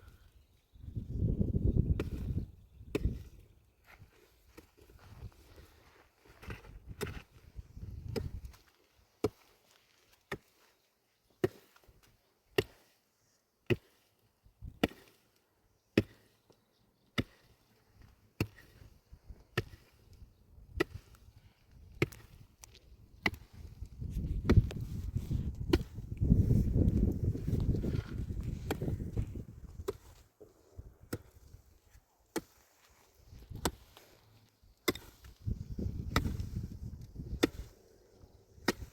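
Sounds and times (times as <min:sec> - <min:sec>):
wood chopping: 0:14.6 - 0:15.2, 0:26.8 - 0:29.0, 0:33.3 - 0:34.0, 0:34.8 - 0:36.5, 0:37.1 - 0:37.7, 0:38.6 - 0:38.9.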